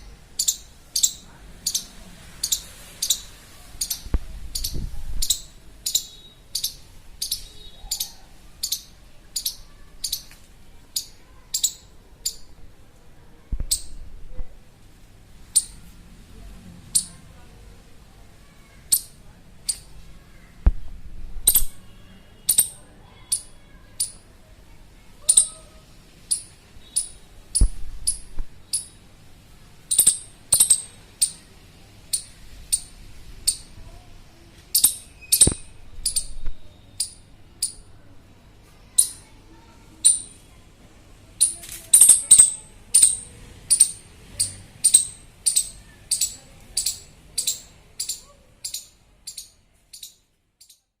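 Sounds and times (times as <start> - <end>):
squirrel high-pitched chirps: 0.4 - 12.6, 13.7 - 14.0, 15.5 - 15.8, 17.0 - 17.2, 18.9 - 19.9, 21.5 - 24.2, 25.2 - 29.0, 29.9 - 33.8, 34.7 - 37.9, 38.9 - 39.3, 40.0 - 40.5, 41.4 - 51.0.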